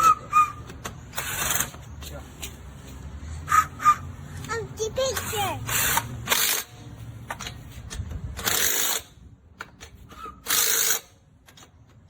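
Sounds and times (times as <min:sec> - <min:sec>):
impact wrench bursts: 0:01.1 - 0:01.8, 0:05.0 - 0:07.5, 0:08.3 - 0:09.2, 0:10.3 - 0:11.7.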